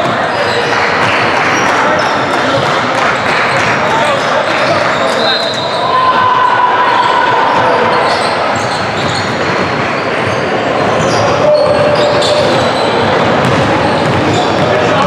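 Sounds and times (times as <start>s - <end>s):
echoing din of crowd: 0.0s - 15.0s
basketball bouncing on court: 8.6s - 15.0s.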